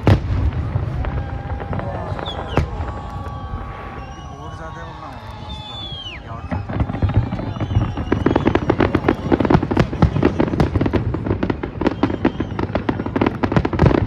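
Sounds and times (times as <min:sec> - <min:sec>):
faint firework whistles: 0:00.0 - 0:14.0
fireworks bangs and crackles: 0:00.0 - 0:14.0.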